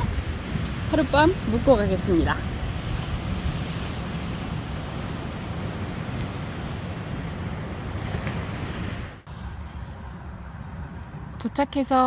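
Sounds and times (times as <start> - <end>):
sea surf: 0.0 - 9.5
wind buffeting microphone: 0.0 - 12.0.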